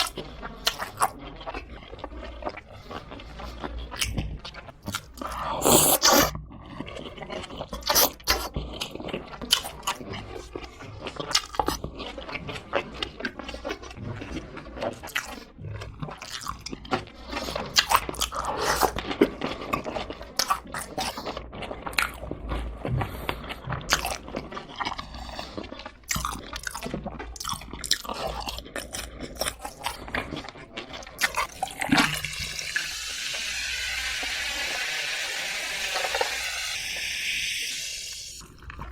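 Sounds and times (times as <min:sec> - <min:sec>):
crunching and chewing fried chicken: 0:00.0 - 0:37.1, 0:38.3 - 0:38.9
steady hiss: 0:32.4 - 0:38.4.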